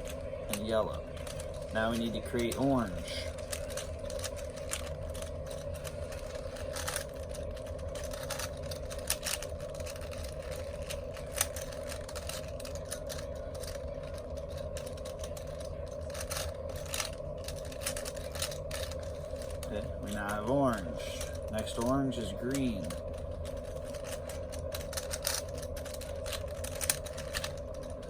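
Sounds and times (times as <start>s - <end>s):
steady background hum: 0.0s - 28.0s
puzzle cube clicking: 8.0s - 27.8s.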